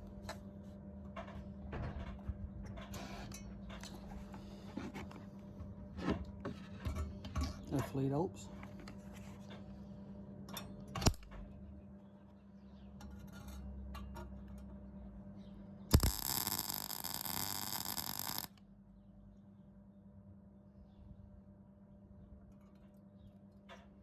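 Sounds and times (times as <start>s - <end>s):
welding arc crackling: 15.9s - 18.6s.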